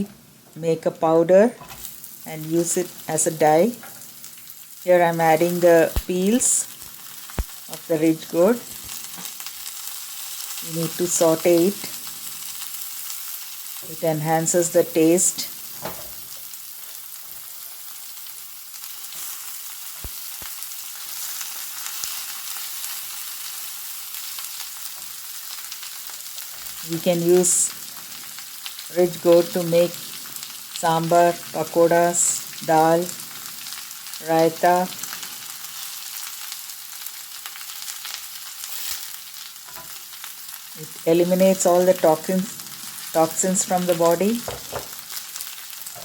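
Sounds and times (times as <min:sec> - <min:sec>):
vegetables sizzling in hot oil: 0:00.0 - 0:46.0.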